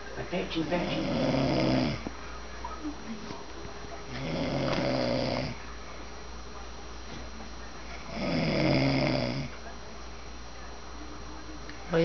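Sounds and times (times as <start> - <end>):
person snoring: 0.9 - 2.0, 4.1 - 5.6, 8.1 - 9.5.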